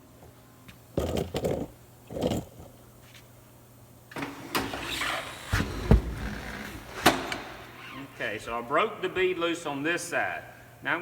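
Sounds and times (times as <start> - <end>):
pneumatic air bursts: 4.6 - 7.8
hissing and creaking tire: 4.6 - 8.2
heavy thump of tire bead: 5.5 - 7.6.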